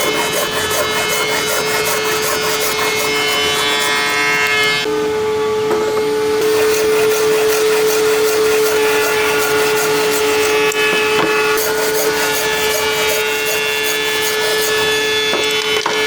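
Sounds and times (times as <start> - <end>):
rough rasping on wood: 0.0 - 4.7, 6.4 - 15.6
power tool motor: 0.0 - 4.9, 6.4 - 16.0.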